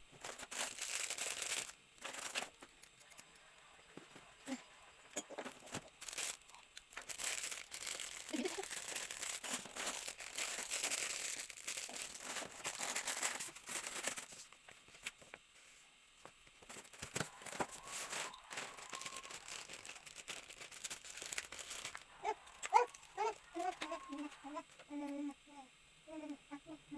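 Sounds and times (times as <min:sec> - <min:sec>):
packaging torn and crinkled: 0:00.2 - 0:03.1, 0:05.6 - 0:14.3, 0:16.7 - 0:24.2.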